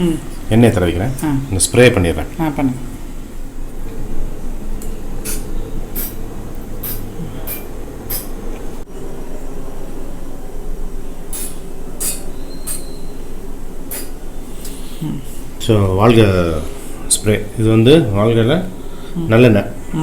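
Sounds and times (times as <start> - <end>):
spray bottle hissing bursts: 5.2 - 6.2.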